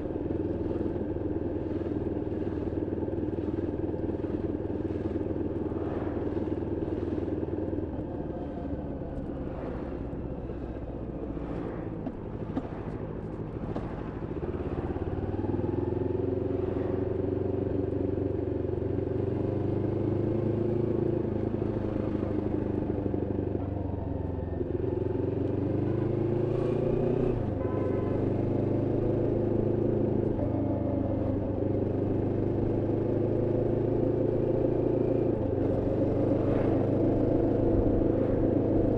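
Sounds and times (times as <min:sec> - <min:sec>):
motorcycle engine revving: 0:13.7 - 0:38.9.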